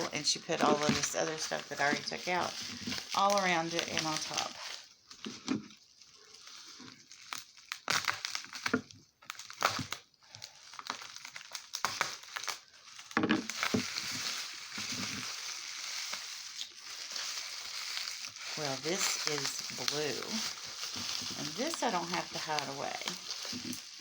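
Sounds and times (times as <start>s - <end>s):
packing paper crumpling: 0.0s - 24.0s.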